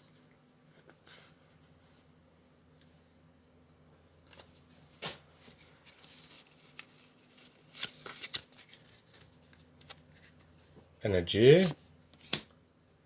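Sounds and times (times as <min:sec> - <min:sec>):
foil wrapper and cards rustling: 0:05.4 - 0:10.5.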